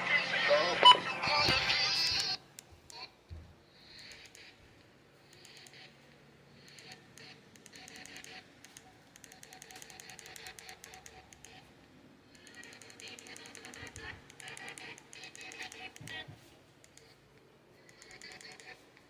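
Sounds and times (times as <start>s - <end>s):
typing on computer keyboard: 6.6s - 11.6s, 12.3s - 16.2s, 17.8s - 18.8s.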